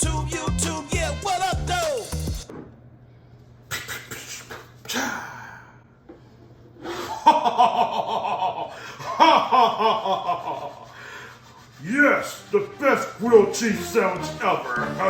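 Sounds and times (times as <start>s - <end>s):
person laughing: 6.9s - 11.0s.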